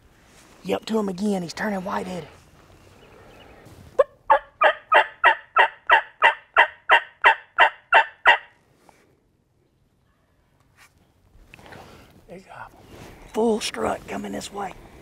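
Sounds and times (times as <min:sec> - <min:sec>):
turkey call yelps: 0:04.0 - 0:08.5.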